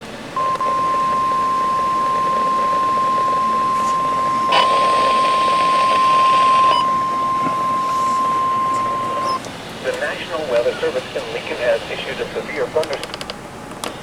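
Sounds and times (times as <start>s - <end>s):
steady high alarm tone: 0.2s - 9.4s.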